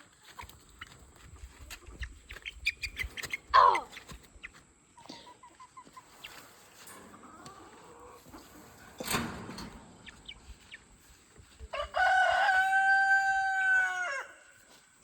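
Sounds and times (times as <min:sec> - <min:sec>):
chickens chirping: 0:00.1 - 0:15.0
rooster crowing: 0:11.7 - 0:14.5.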